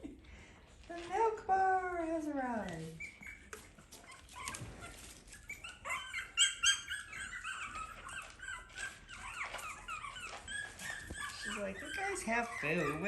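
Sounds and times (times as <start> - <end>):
puppies whining and yipping: 2.8 - 13.0.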